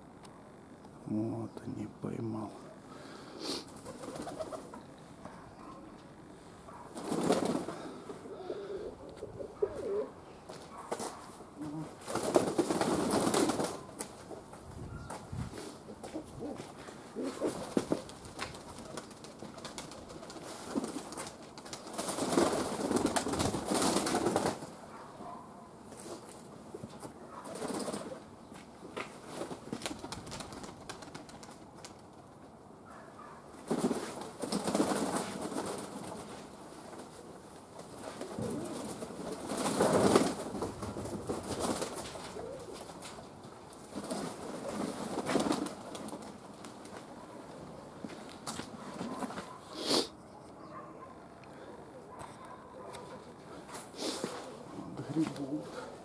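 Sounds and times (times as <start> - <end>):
pigeons cooing: 2.7 - 5.9, 6.7 - 10.5, 15.8 - 21.3, 37.9 - 43.1.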